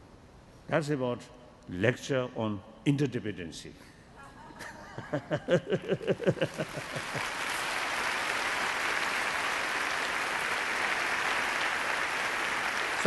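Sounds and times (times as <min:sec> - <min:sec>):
audience applauding: 0:06.1 - 0:13.0.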